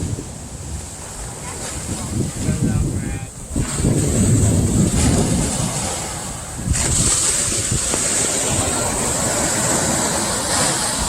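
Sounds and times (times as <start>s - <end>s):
wave breaking: 0.0s - 11.0s
wave wash hissing: 0.0s - 11.0s
wind on microphone: 0.0s - 11.0s.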